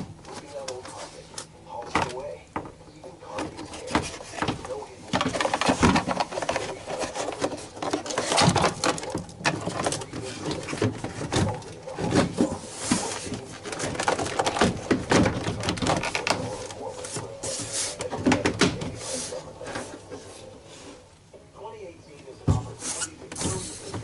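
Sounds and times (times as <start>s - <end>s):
plastic and metal knocks and clicks: 3.4s - 12.5s, 13.6s - 16.6s.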